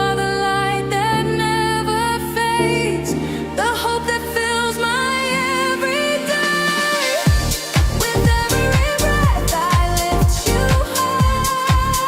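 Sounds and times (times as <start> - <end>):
deep kick drum beat: 7.3 - 12.0.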